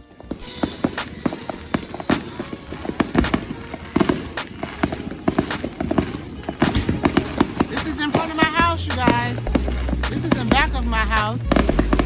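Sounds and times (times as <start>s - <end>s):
firecracker crackle: 0.0s - 12.0s
fireworks bangs and pops: 0.0s - 12.0s.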